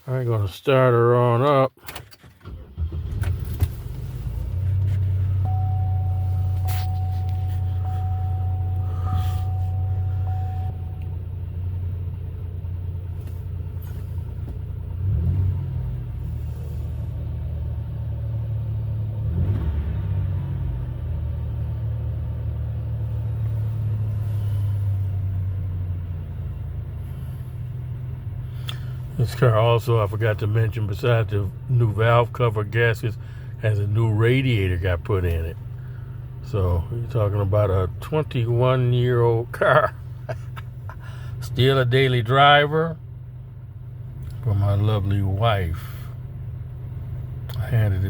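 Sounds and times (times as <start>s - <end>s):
car engine idling: 0.0s - 48.0s
faint steady tone: 5.3s - 12.0s.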